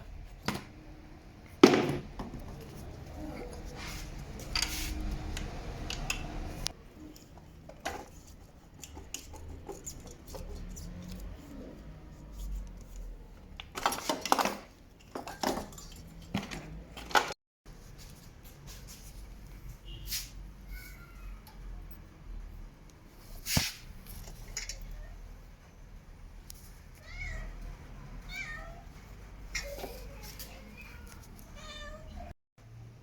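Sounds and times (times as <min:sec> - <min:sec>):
clicks and knocks of handling: 0:04.2 - 0:11.3, 0:12.6 - 0:17.4.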